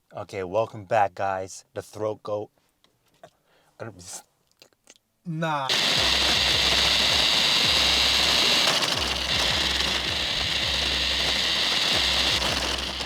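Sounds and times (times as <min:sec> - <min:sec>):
toy car motor whining: 0:05.7 - 0:13.0.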